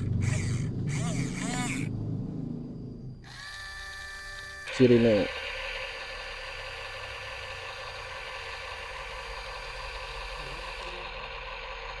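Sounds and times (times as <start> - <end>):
mechanical hum with hiss: 0.0 - 12.0.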